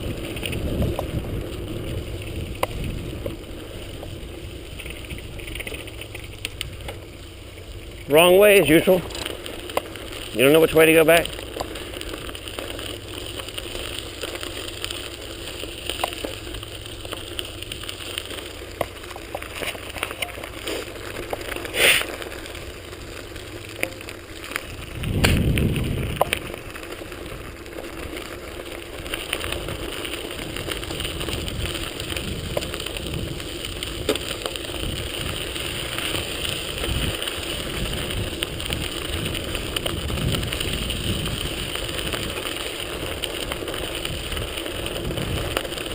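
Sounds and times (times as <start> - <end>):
bicycle clicks and rattles: 0.0 - 45.9
bicycle tyre and wind noise: 0.0 - 45.9
low rumble: 11.3 - 34.0.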